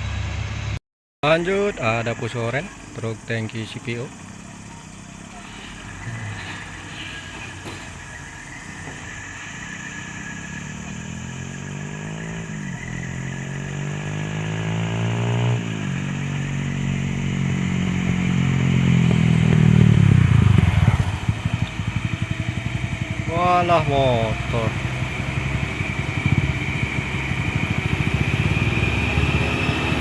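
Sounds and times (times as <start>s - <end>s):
diesel truck engine pulling uphill: 0.0s - 30.0s.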